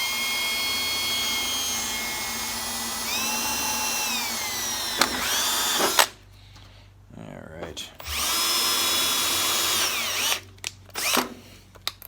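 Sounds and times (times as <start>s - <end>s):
power drill drilling metal: 0.0s - 6.2s, 8.0s - 11.5s.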